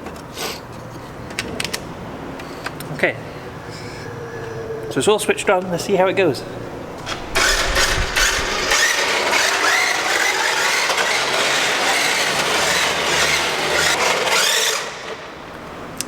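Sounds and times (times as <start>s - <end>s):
rc car motor whine: 7.0s - 15.3s.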